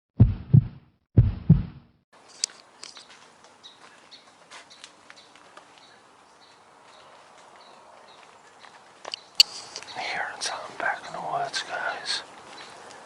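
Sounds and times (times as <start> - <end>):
heavy low double thumps: 0.2 - 2.0
faint outdoor ambience: 2.2 - 13.0
sharp ticks and cracks: 2.3 - 3.6, 9.0 - 12.0.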